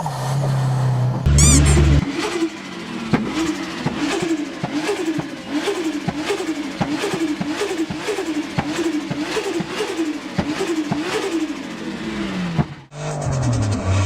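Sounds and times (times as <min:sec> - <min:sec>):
turbo whistles: 0:01.3 - 0:02.0
car engine running: 0:01.3 - 0:14.0.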